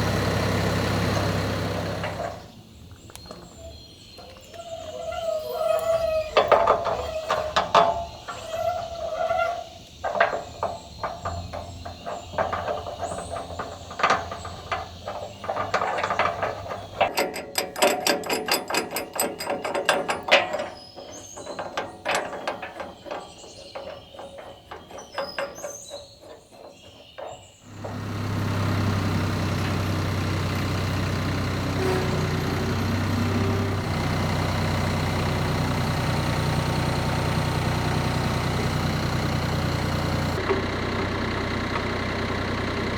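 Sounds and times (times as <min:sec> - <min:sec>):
vehicle engine idling: 0:00.0 - 0:18.7, 0:27.6 - 0:42.9
clanks clicks and knocks: 0:00.1 - 0:42.9.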